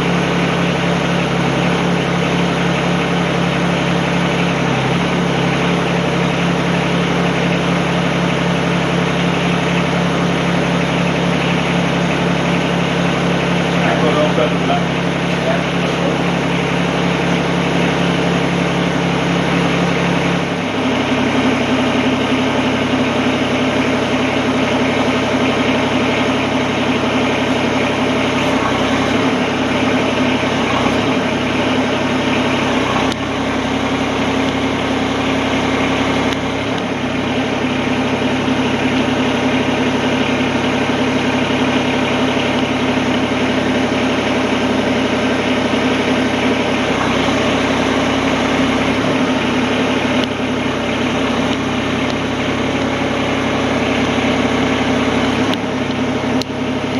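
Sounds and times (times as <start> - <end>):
tractor diesel engine running: 0.0 - 56.9.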